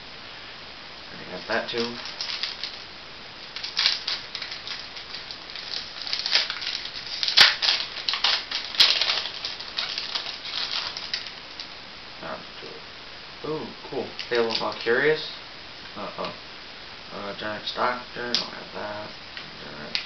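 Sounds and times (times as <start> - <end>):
foil wrapper crinkling and tearing: 1.3 - 11.8, 14.2 - 14.9.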